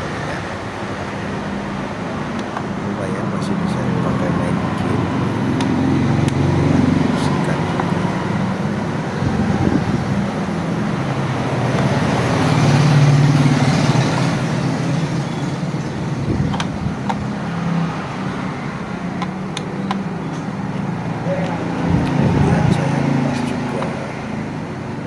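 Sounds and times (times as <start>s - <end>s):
low rumble of road traffic: 0.0s - 25.0s
light clicks: 16.5s - 17.2s.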